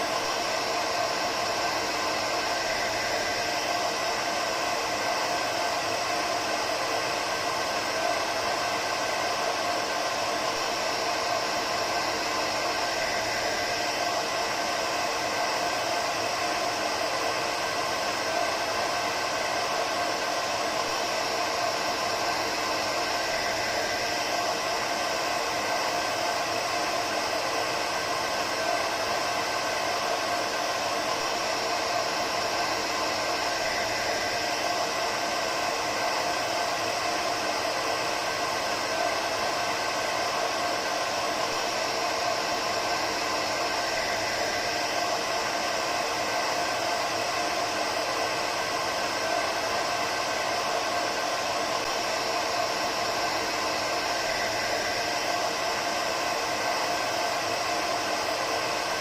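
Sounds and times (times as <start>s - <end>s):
hair dryer running: 0.0s - 59.0s.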